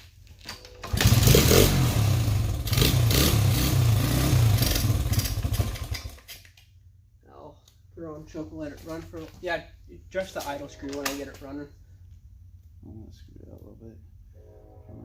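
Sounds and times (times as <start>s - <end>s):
motorcycle engine running: 0.9s - 6.0s.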